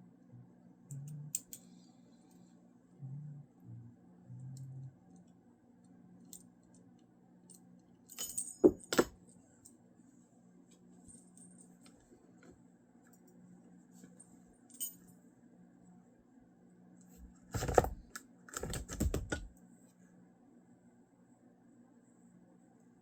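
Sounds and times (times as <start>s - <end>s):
small metal objects clinking: 8.1s - 9.1s.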